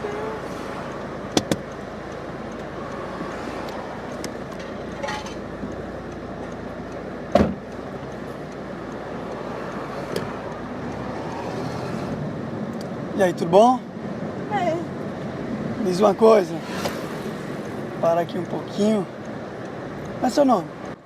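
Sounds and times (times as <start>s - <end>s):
street traffic noise: 0.0s - 21.0s
sharp thump: 7.3s - 7.6s.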